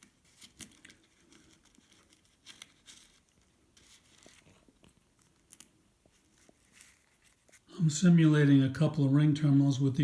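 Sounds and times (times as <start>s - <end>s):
small metal hardware clinking: 0.0s - 3.3s, 6.6s - 7.3s.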